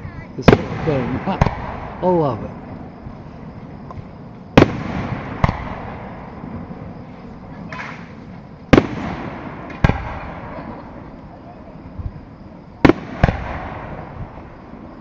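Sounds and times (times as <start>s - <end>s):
fireworks booming: 0.0s - 15.0s
fireworks crackle: 7.0s - 11.2s.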